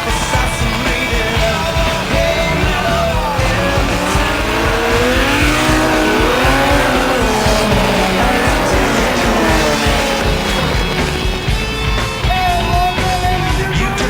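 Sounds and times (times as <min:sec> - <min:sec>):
background music: 0:00.0 - 0:14.0
race car engines running hard: 0:00.0 - 0:14.0.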